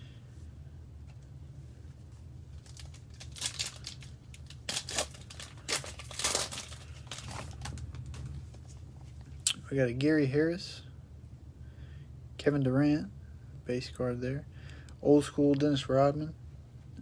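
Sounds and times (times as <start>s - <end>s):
steady low hum: 0.0s - 17.0s
card pack wrapper crinkling: 2.5s - 8.7s.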